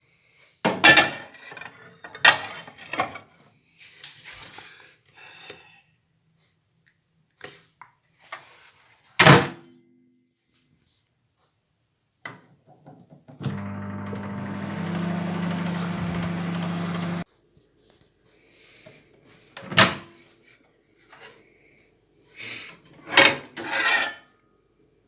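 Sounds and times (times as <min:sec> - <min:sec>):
microwave oven humming: 0:13.4 - 0:17.2.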